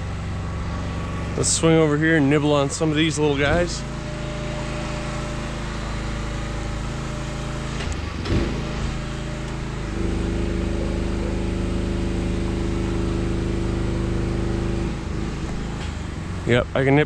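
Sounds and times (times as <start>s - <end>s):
aerial lift engine running: 0.0s - 17.0s.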